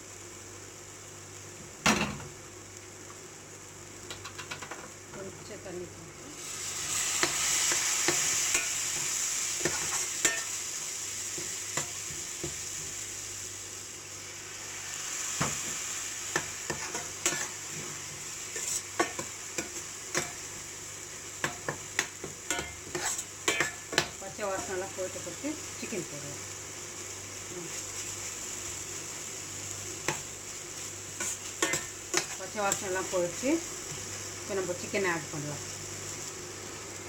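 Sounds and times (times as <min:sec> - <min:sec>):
food sizzling in hot oil: 0:00.0 - 0:37.0
spatula scraping pan: 0:07.2 - 0:10.5, 0:16.4 - 0:20.4, 0:21.4 - 0:24.8, 0:31.2 - 0:33.0
spatula tapping pan: 0:09.6 - 0:10.5, 0:18.6 - 0:20.5, 0:21.4 - 0:24.7, 0:31.2 - 0:32.8.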